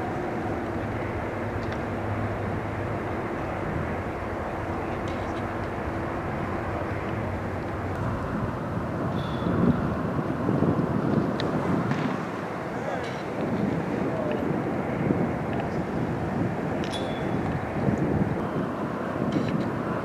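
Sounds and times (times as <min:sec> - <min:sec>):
faint hum: 0:00.0 - 0:11.1
distant large vehicle rumble: 0:00.0 - 0:20.0.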